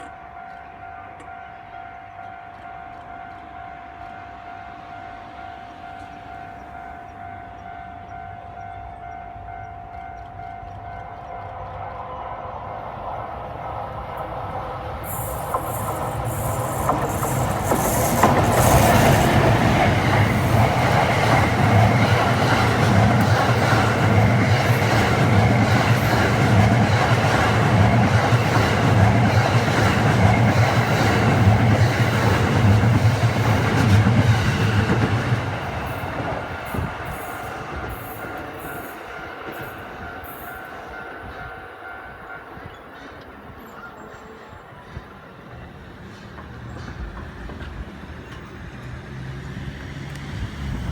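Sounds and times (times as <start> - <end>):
low hum of passing train: 0.0 - 50.9
train wheels clacking on rail joints: 14.0 - 50.7.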